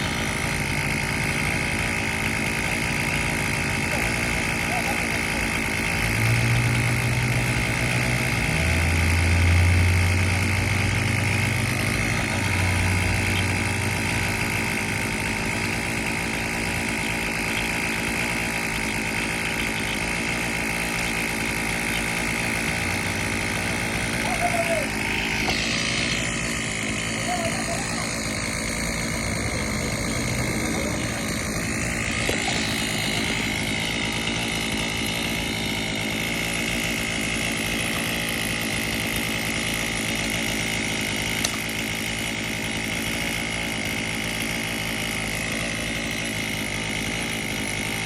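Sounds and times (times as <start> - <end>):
engine humming: 0.0 - 48.0.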